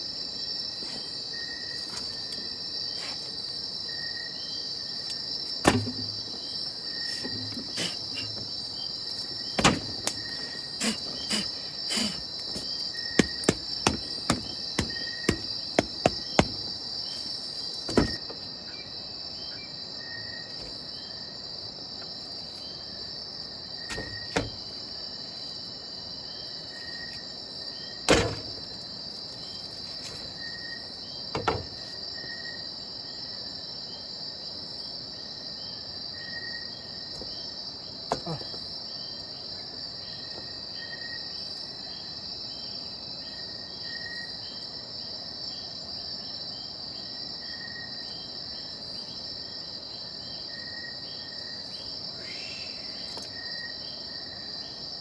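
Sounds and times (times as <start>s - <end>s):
cricket chorus: 0.0s - 55.0s
sharp knocks and taps: 12.5s - 16.8s.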